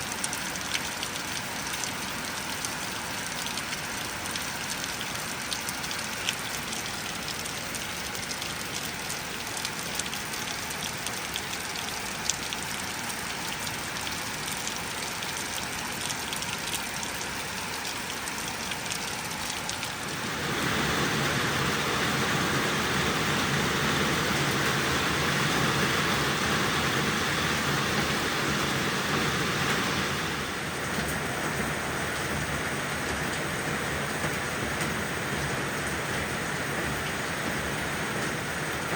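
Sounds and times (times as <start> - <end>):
sharp drip ticks: 0.0 - 20.0
rain falling: 0.0 - 38.9.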